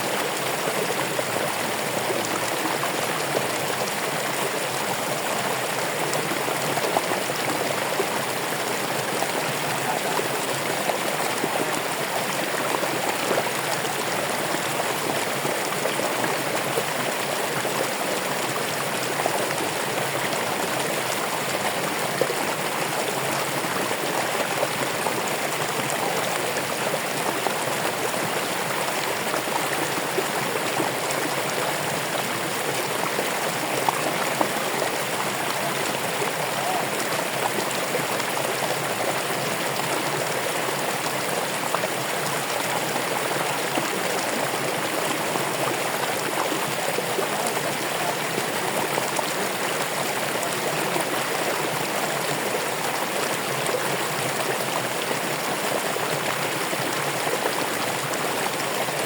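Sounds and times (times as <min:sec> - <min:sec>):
stream water rushing and splashing: 0:00.0 - 0:59.0.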